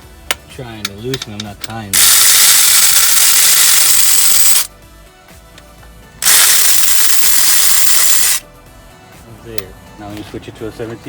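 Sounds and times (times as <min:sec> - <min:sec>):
power wrench loosening a bolt: 0:00.8 - 0:04.7, 0:06.2 - 0:08.4.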